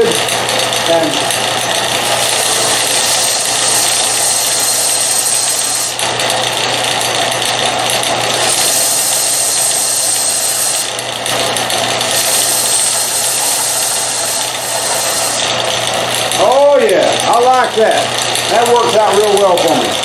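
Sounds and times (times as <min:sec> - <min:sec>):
belt sander running: 0:00.0 - 0:20.0
high whine: 0:01.0 - 0:06.2.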